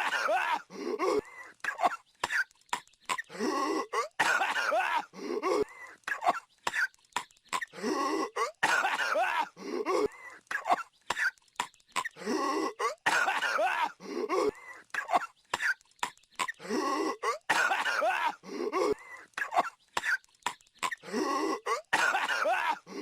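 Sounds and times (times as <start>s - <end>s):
cartoon voice coughing: 17.2s - 20.2s, 21.6s - 22.9s.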